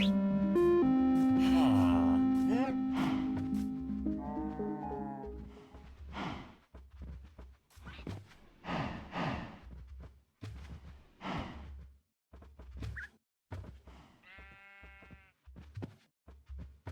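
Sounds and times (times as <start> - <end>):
long bleat-like call: 14.3 - 15.3.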